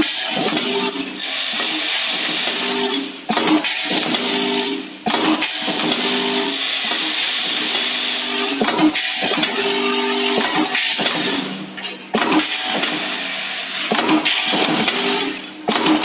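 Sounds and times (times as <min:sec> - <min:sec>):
packaging machine motor hum: 0:00.0 - 0:16.0.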